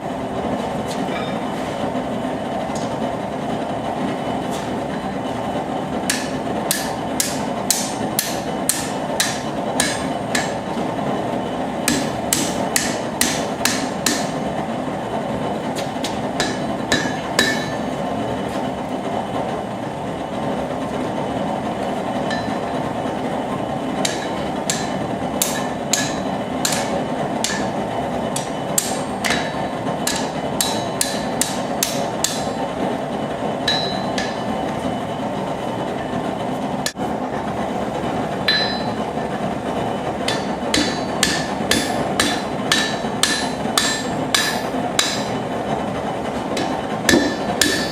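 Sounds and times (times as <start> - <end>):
forge burner rushing: 0.0 - 47.9
hammer striking metal on anvil: 6.1 - 10.7, 11.8 - 14.4, 15.8 - 17.9, 22.3 - 22.8, 24.0 - 27.8, 28.4 - 32.6, 33.6 - 34.5, 38.5 - 39.1, 40.2 - 45.3, 46.6 - 47.9.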